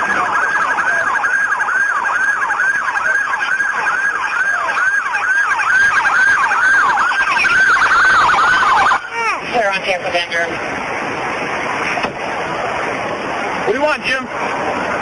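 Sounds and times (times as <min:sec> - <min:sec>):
police siren yelping: 0:00.0 - 0:09.6.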